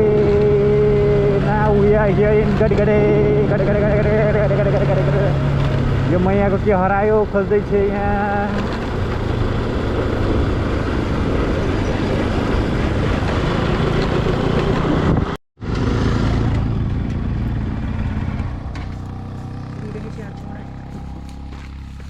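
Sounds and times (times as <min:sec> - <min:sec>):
motorcycle engine running: 0:00.0 - 0:22.0
wind and road noise: 0:00.0 - 0:22.0.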